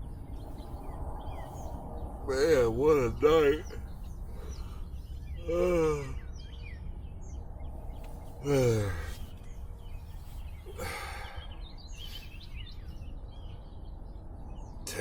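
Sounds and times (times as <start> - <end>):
low rumble: 0.0 - 12.0
birds chirping: 0.0 - 15.0
man sighing: 5.4 - 6.2, 8.4 - 9.3, 10.7 - 11.5
man breathing out: 10.6 - 12.2.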